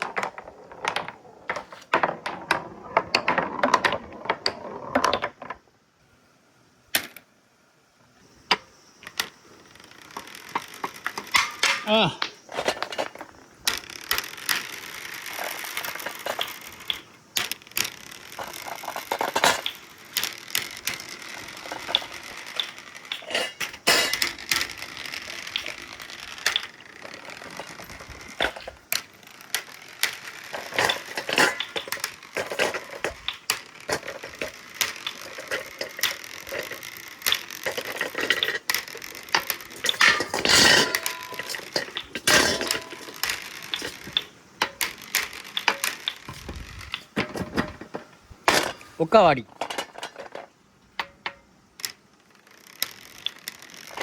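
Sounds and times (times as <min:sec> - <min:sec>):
marbles clattering on metal track: 0:00.0 - 0:05.7, 0:08.5 - 0:54.0.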